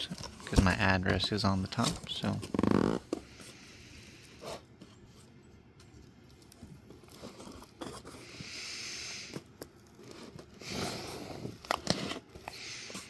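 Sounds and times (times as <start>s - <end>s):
packaging rustling: 0.0s - 3.4s, 9.2s - 13.0s.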